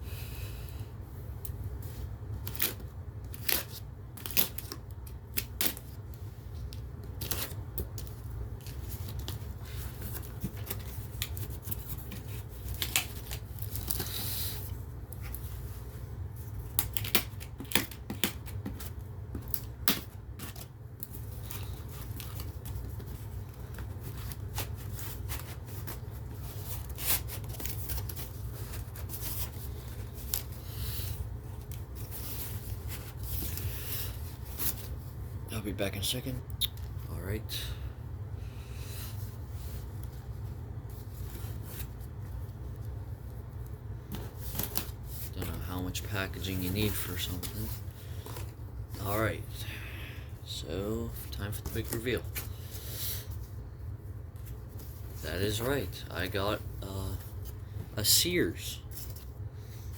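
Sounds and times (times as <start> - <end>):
steady low hum: 0.0 - 59.9
hands unpacking a box: 6.6 - 15.6.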